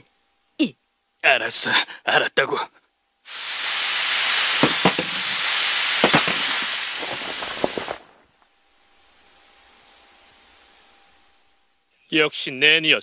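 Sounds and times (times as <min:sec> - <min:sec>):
hiss with crackles and pops: 0:03.2 - 0:13.0.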